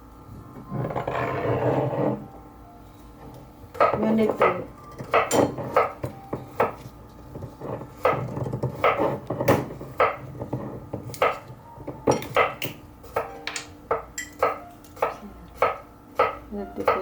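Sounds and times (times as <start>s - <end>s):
utensils clinking against dishes: 3.8s - 6.9s, 12.0s - 17.0s.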